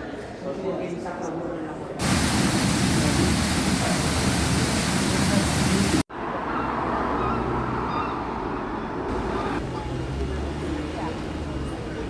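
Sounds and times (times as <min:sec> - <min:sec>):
murmur of distant voices: 0:00.0 - 0:06.8, 0:09.1 - 0:12.0
steady rushing noise: 0:02.0 - 0:06.1.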